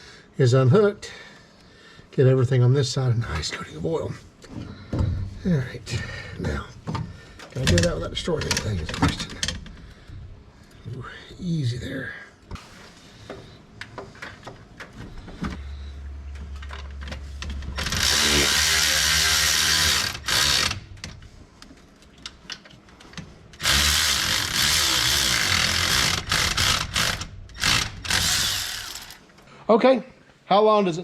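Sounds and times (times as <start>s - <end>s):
steady low hum: 0.0s - 30.4s
power drill running: 17.7s - 20.9s, 23.6s - 29.2s.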